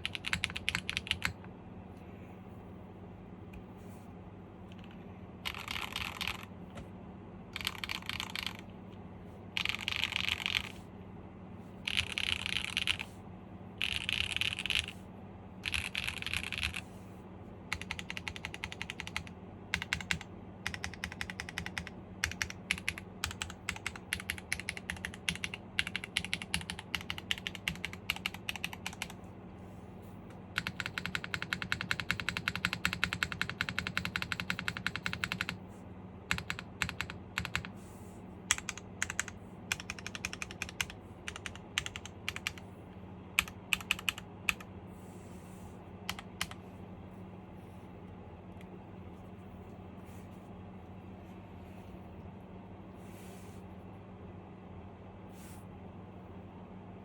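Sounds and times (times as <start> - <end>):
typing on mechanical keyboard: 0.0 - 1.4, 4.7 - 6.5, 7.5 - 8.7, 9.5 - 10.8, 11.8 - 13.1, 13.8 - 15.0, 15.6 - 16.9, 17.7 - 29.2, 30.3 - 35.6, 36.3 - 37.8, 38.5 - 42.7, 43.4 - 44.7, 46.1 - 46.6.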